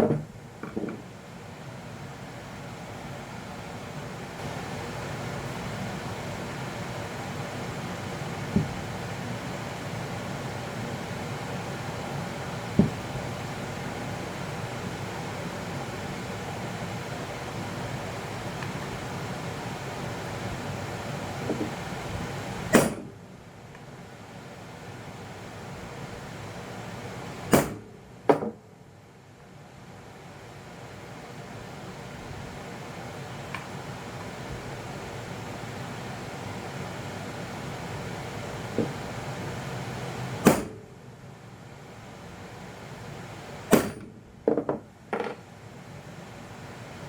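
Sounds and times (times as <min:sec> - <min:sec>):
steady low hum: 0:00.0 - 0:47.0
steady mechanical noise: 0:00.0 - 0:47.0
sharp knocks: 0:12.8 - 0:13.0.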